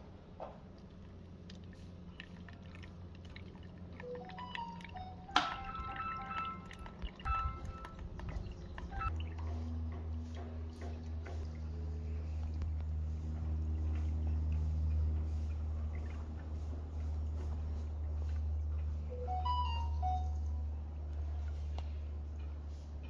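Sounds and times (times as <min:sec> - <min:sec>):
steady low hum: 0:00.0 - 0:23.0
water dripping and trickling: 0:00.6 - 0:18.5.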